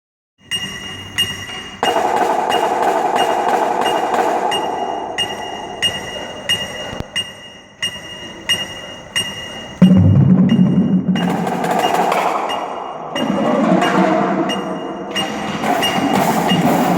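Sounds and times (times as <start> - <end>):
sustained tone: 9.8 - 15.3.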